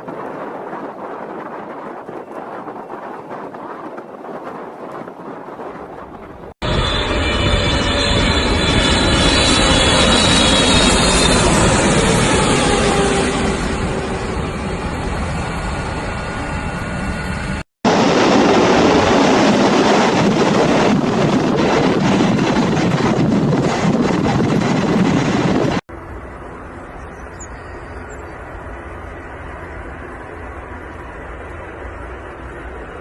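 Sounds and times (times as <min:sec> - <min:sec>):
aircraft landing rumble: 0:00.0 - 0:33.0.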